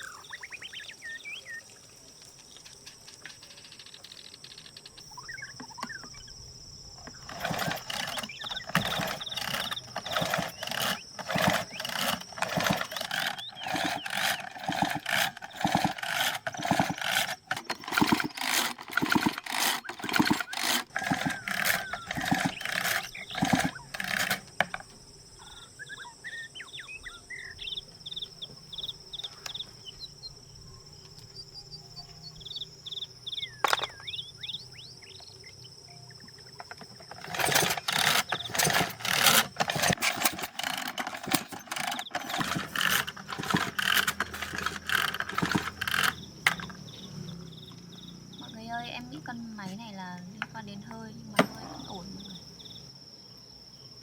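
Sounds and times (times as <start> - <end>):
cricket chirping: 0.0 - 54.0
insects buzzing: 0.0 - 54.0
loud clicks and knocks: 7.0 - 25.0, 33.6 - 34.0, 36.6 - 46.8.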